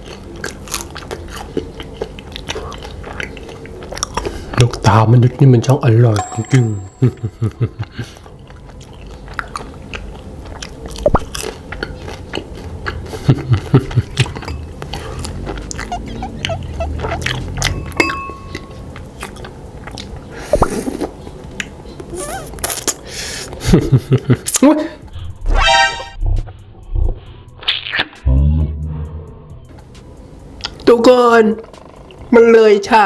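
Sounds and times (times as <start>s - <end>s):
close chewing: 0.0s - 4.9s, 8.0s - 23.1s
wet mouth clicks and smacks: 8.8s - 13.2s, 18.5s - 21.8s, 22.5s - 23.0s, 30.6s - 30.8s.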